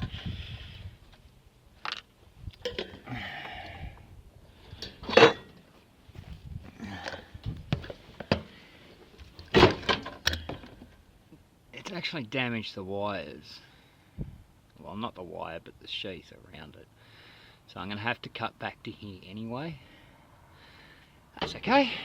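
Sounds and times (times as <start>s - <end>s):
small hard parts clicking and rustling: 1.8s - 3.1s, 7.0s - 11.0s.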